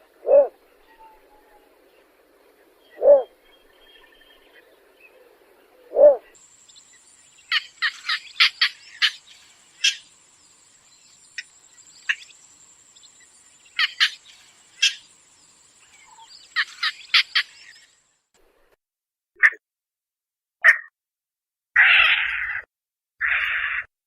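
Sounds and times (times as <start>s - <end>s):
faint steady high whine: 6.4s - 18.3s.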